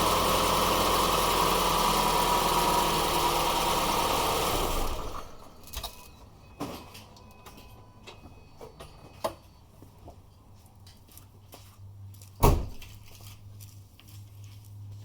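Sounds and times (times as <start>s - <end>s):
car engine idling: 0.0s - 5.6s.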